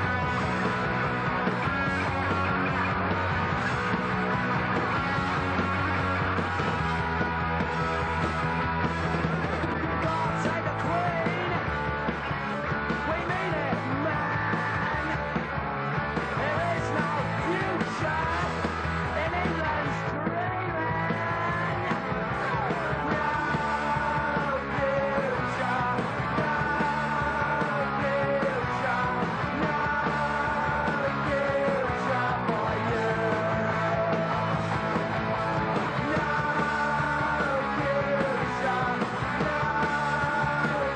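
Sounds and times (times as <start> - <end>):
bass guitar: 0.0 - 40.9
electric guitar: 0.0 - 40.9
person singing: 9.7 - 11.7, 16.4 - 34.6, 35.7 - 40.9.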